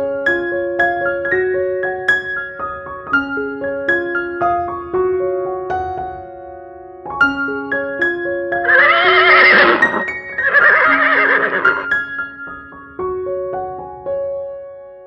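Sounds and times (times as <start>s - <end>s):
soft piano music: 0.0s - 15.0s
horse whinnying: 8.6s - 11.9s.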